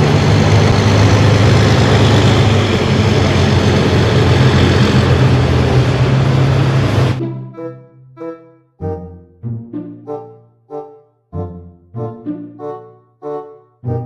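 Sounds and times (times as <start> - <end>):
engine-like rumble with rushing hiss: 0.0 - 7.2.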